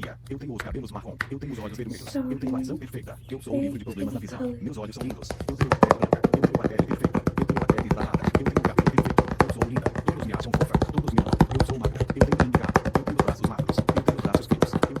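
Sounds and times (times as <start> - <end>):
rapid tapping: 4.8 - 15.0.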